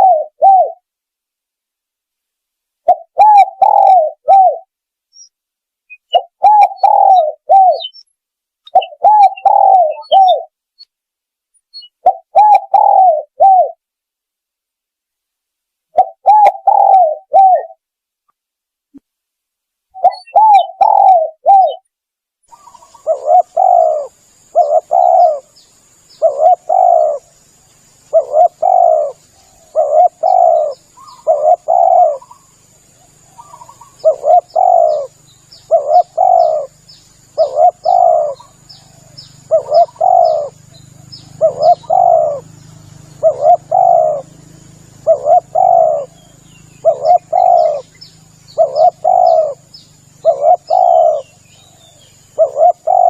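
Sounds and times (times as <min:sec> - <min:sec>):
dove cooing: 0:00.0 - 0:00.8, 0:02.8 - 0:04.7, 0:06.0 - 0:08.0, 0:08.7 - 0:10.5, 0:11.9 - 0:13.8, 0:15.9 - 0:17.8, 0:20.0 - 0:21.8, 0:22.5 - 0:25.6, 0:26.2 - 0:27.3, 0:28.0 - 0:53.0.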